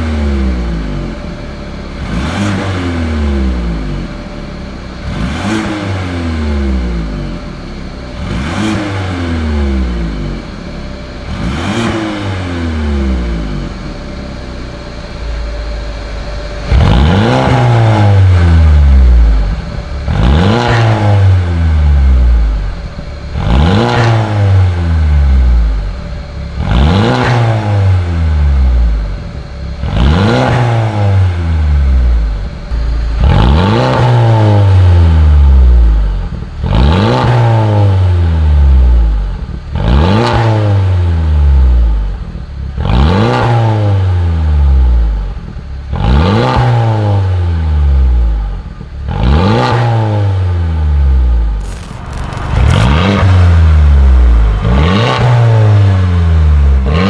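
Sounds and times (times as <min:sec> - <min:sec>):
car engine revving: 0:00.0 - 0:57.0.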